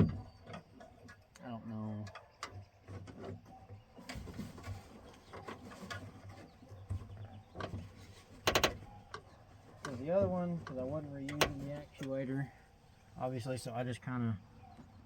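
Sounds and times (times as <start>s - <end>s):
door latch clicking and rattling: 8.4s - 8.9s, 11.3s - 11.8s.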